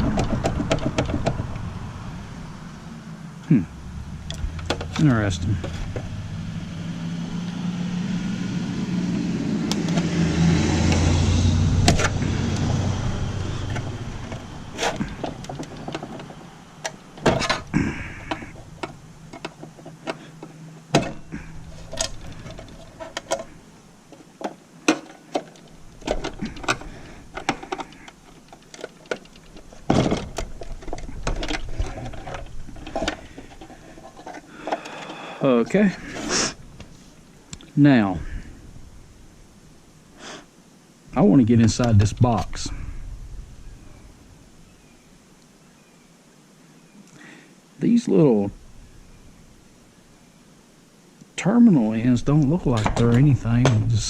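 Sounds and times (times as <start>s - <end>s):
low motor hum: 0.0s - 24.0s, 41.1s - 45.0s
clicks and knocks of small parts: 13.7s - 35.2s.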